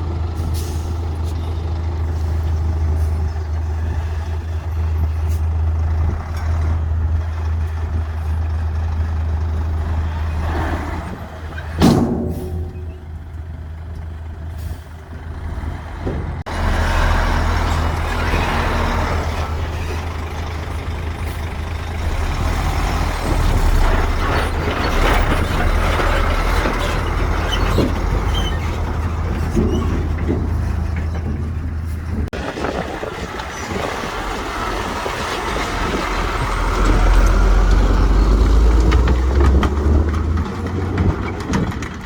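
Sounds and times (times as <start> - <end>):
diesel machinery droning: 0.0 - 42.0
metal knocks and clanks: 11.5 - 14.3, 23.1 - 32.4, 38.8 - 42.0.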